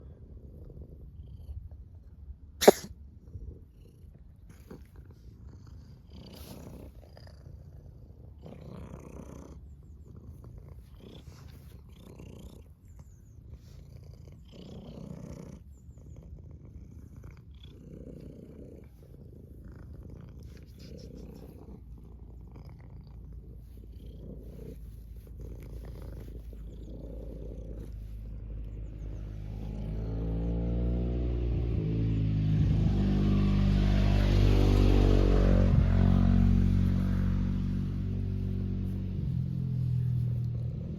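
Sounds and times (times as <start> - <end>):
cat purring: 0.0 - 31.9, 32.6 - 40.9
sharp sneeze: 2.6 - 2.9.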